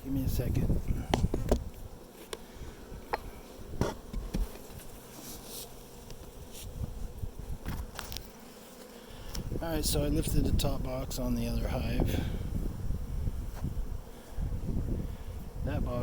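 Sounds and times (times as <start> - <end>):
bees buzzing: 0.0 - 16.0
wooden hive boxes knocking: 1.0 - 2.4, 3.0 - 7.0.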